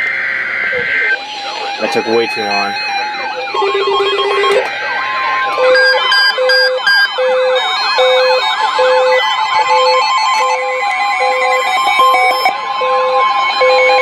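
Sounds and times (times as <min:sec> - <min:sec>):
steady alarm tone: 0:00.0 - 0:14.0
pulsing beeps: 0:00.7 - 0:14.0
warbling alert tones: 0:01.2 - 0:04.9.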